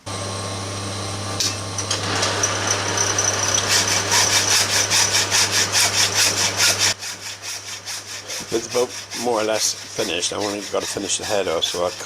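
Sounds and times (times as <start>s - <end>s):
lathe motor humming: 0.1s - 7.6s
metal cutting rasping strokes: 2.0s - 12.0s.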